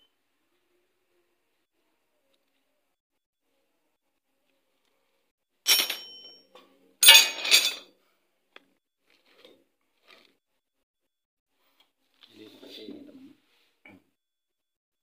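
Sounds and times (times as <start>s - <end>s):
metal parts clattering on work surface: 5.7s - 6.4s, 7.0s - 7.9s.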